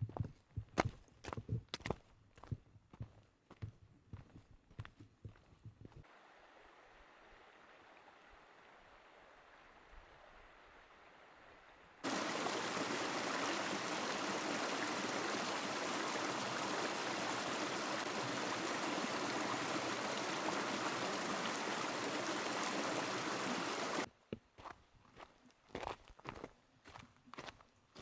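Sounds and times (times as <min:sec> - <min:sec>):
running water rushing: 0:12.0 - 0:24.1.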